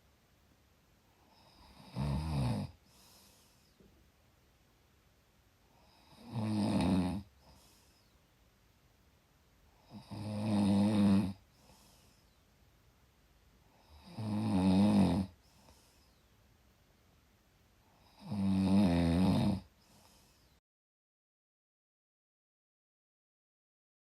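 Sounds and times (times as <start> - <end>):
person snoring: 1.2 - 3.7, 5.7 - 8.1, 9.8 - 12.2, 13.7 - 16.0, 17.9 - 20.4
faint breath: 2.8 - 4.0, 7.3 - 8.3, 11.4 - 12.5, 15.4 - 16.4, 19.7 - 20.6.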